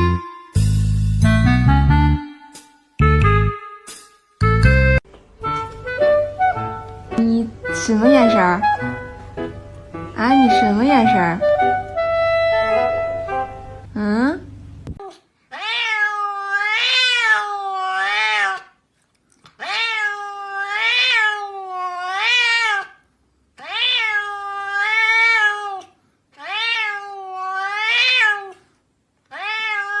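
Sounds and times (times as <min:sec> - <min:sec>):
cat meowing: 0:15.0 - 0:18.8, 0:19.6 - 0:23.0, 0:23.6 - 0:28.6, 0:29.3 - 0:30.0.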